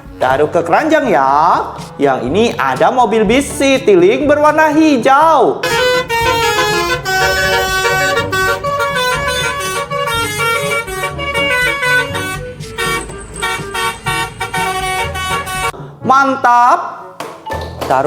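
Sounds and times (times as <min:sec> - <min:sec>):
musical bus horn: 0:05.6 - 0:15.8.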